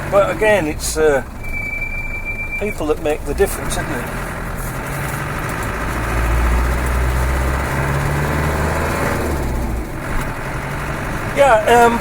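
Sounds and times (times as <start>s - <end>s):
diesel engine drone in cab: 0.0s - 12.0s.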